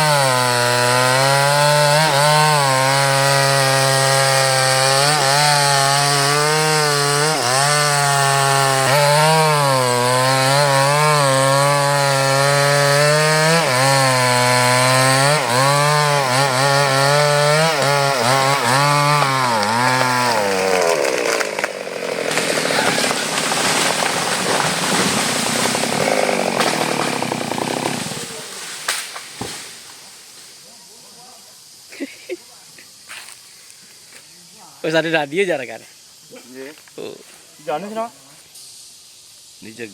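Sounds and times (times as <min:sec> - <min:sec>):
chainsaw cutting wood: 0:00.0 - 0:30.0.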